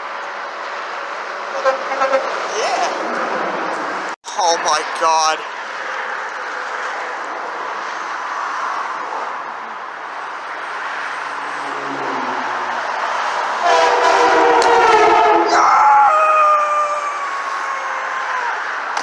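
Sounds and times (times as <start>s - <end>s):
heavy truck passing: 0.4s - 15.5s
truck train horn chord: 13.6s - 15.5s.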